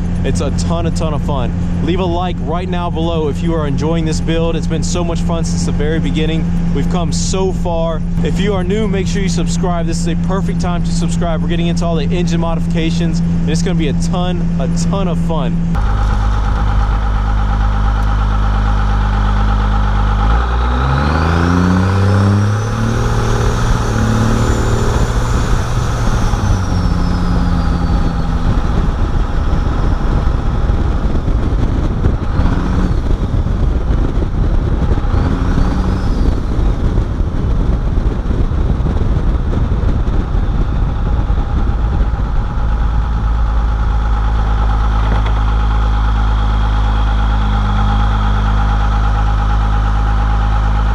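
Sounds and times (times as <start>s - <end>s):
diesel engine accelerating: 0.0s - 50.9s
turbo whistling: 15.9s - 33.6s, 35.0s - 37.0s.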